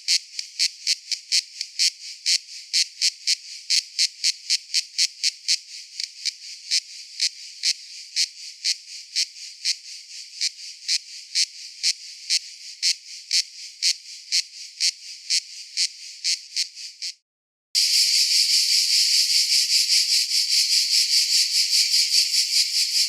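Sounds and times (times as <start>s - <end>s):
cicada buzzing: 17.8s - 23.0s.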